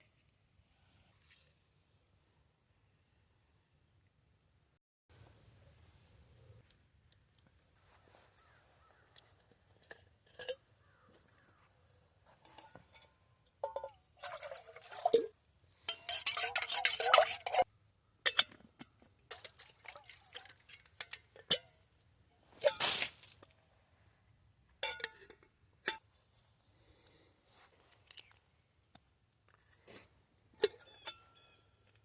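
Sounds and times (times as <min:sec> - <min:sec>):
cookware clinking: 0:12.4 - 0:14.1, 0:15.9 - 0:17.6, 0:24.8 - 0:26.0
water pouring and sloshing: 0:13.8 - 0:15.4, 0:19.3 - 0:21.5.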